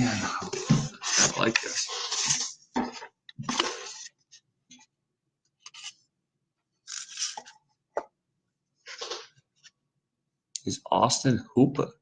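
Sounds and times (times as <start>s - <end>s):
cards scraping together: 6.8s - 7.6s.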